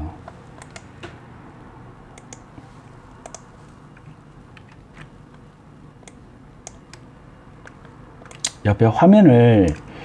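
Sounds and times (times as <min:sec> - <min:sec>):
low room hum: 0:00.0 - 0:10.0
computer keyboard clicks: 0:00.6 - 0:00.9, 0:02.2 - 0:02.5, 0:03.2 - 0:03.5, 0:07.6 - 0:08.6, 0:09.6 - 0:09.9.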